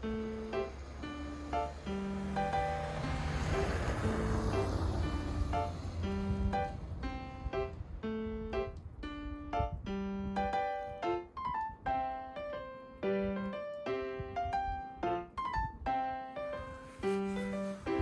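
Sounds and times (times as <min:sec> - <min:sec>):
electric piano tune: 0:00.0 - 0:18.0.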